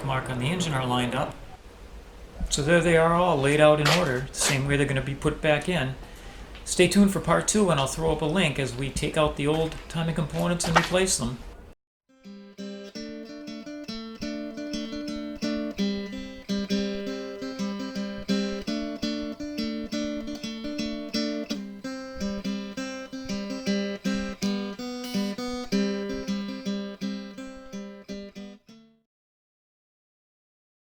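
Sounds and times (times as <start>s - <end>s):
acoustic guitar strummed and plucked: 12.1s - 28.9s.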